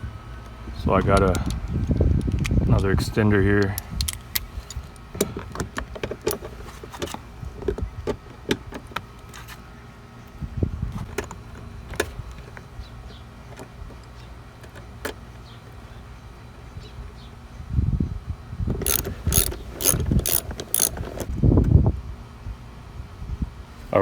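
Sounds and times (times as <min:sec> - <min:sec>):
hand tools clicking and clinking: 0:18.8 - 0:21.3.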